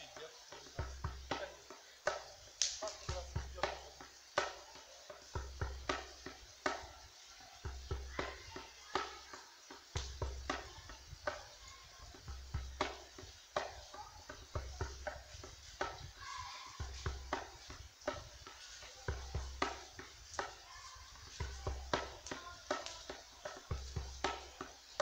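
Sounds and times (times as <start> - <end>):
campfire crackling: 0.0 - 25.0.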